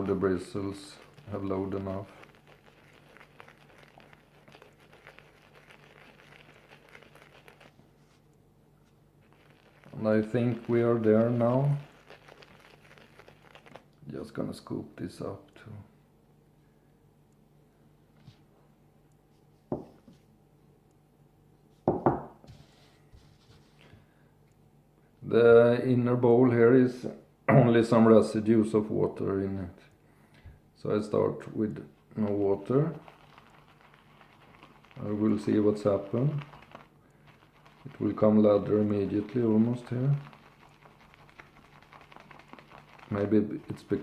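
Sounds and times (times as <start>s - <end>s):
faint rubbing: 0.0s - 13.9s, 32.2s - 44.0s
shaving brush squishing lather: 0.0s - 14.8s, 32.0s - 44.0s.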